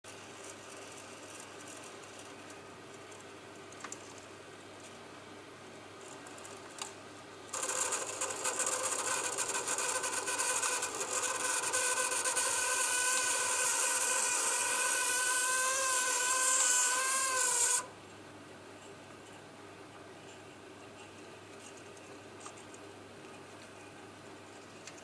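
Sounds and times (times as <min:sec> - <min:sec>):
boiler squealing whine: 0:07.5 - 0:18.0.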